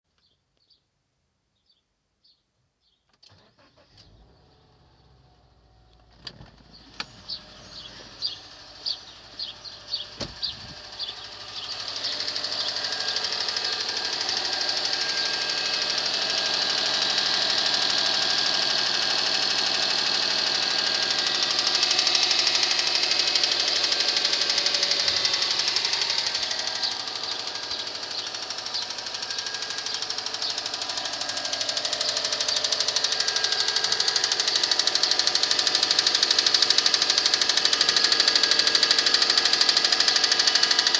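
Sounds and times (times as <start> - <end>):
car engine running: 3.3 - 40.9
fast engine ticking: 5.9 - 40.9
sharp engine knocks: 9.4 - 10.8.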